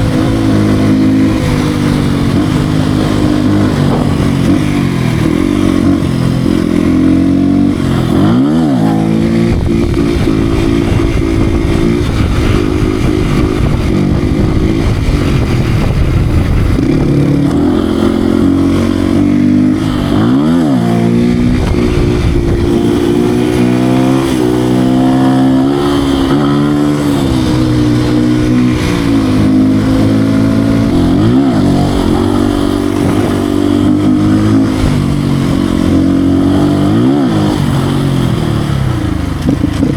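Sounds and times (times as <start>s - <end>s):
motorcycle engine under way: 0.0s - 39.9s.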